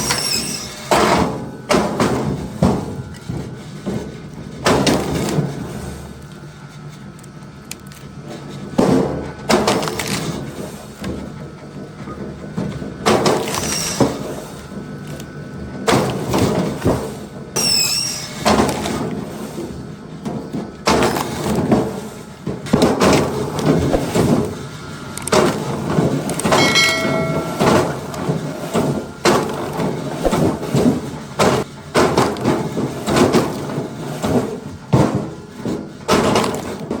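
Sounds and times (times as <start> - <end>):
high squeal: 0.0 - 0.9
short ringing squeal: 0.0 - 0.9, 17.6 - 18.4, 26.5 - 28.2
log splitter splitting wood: 7.1 - 37.0.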